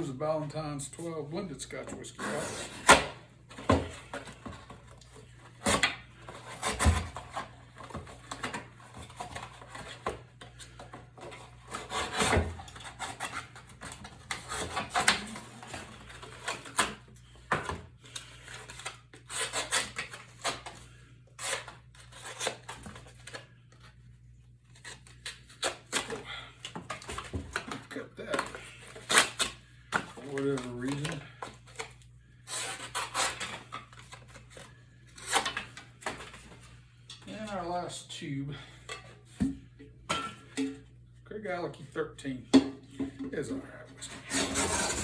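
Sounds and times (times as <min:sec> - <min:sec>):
knife cutting cardboard: 0:05.6 - 0:07.5, 0:11.7 - 0:16.9, 0:18.7 - 0:20.8.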